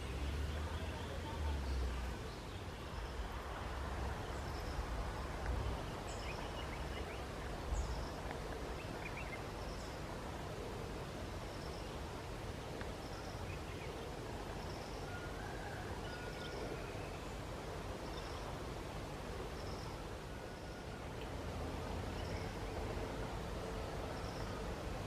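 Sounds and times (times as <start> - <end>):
wind rumbling on microphone: 1.9 - 12.6
small ticks and rustles: 4.5 - 16.5.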